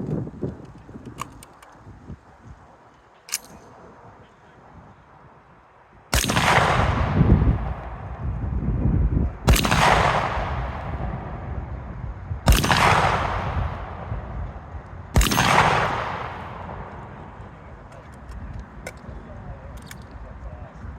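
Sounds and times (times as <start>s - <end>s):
shotgun shots with rolling echo: 6.1s - 8.4s, 9.4s - 11.8s, 12.4s - 17.9s.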